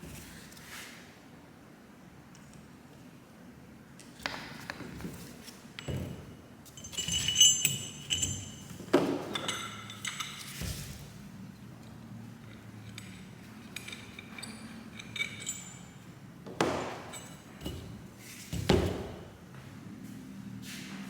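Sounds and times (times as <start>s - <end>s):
metal parts clinking: 6.7s - 11.1s, 11.8s - 16.1s, 16.7s - 18.0s.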